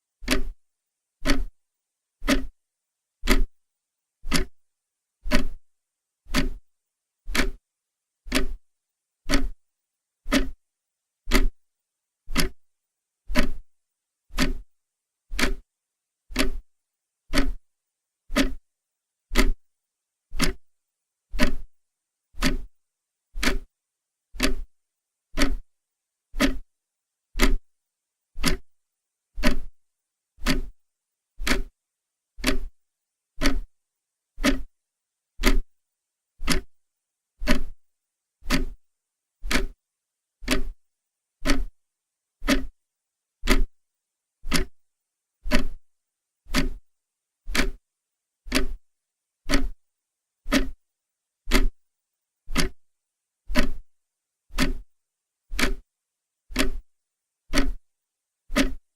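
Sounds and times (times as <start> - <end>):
clock ticking: 0.2 - 0.6, 1.2 - 1.5, 2.2 - 2.5, 3.2 - 3.5, 4.3 - 4.6, 5.3 - 5.6, 6.3 - 6.6, 7.3 - 7.6, 8.3 - 8.6, 9.3 - 9.6, 10.3 - 10.6, 11.3 - 11.6, 12.3 - 12.6, 13.3 - 13.6, 14.3 - 14.6, 15.3 - 15.6, 16.3 - 16.6, 17.3 - 17.6, 18.3 - 18.6, 19.3 - 19.6, 20.4 - 20.6, 21.4 - 21.7, 22.4 - 22.7, 23.4 - 23.7, 24.4 - 24.7, 25.4 - 25.7, 26.4 - 26.6, 27.4 - 27.6, 28.4 - 28.6, 29.4 - 29.7, 30.4 - 30.7, 31.4 - 31.7, 32.4 - 32.7, 33.4 - 33.7, 34.4 - 34.7, 35.4 - 35.7, 36.4 - 36.8, 37.4 - 37.8, 38.4 - 38.8, 39.4 - 39.8, 40.4 - 40.8, 41.4 - 41.8, 42.4 - 42.7, 43.4 - 43.7, 44.5 - 44.8, 45.5 - 45.8, 46.5 - 46.8, 47.5 - 47.8, 48.5 - 48.8, 49.5 - 49.8, 50.5 - 50.8, 51.5 - 51.8, 52.5 - 52.8, 53.5 - 53.8, 54.5 - 54.9, 55.5 - 55.8, 56.5 - 56.9, 57.5 - 57.8, 58.5 - 58.9.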